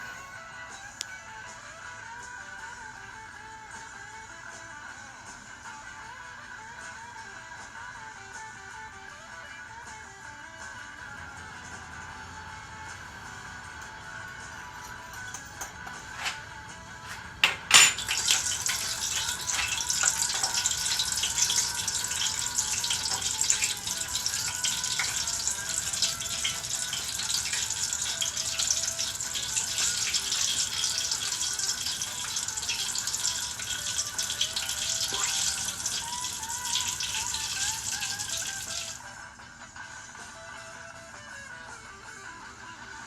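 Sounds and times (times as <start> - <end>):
oil sizzling and crackling: 15.2 - 39.0.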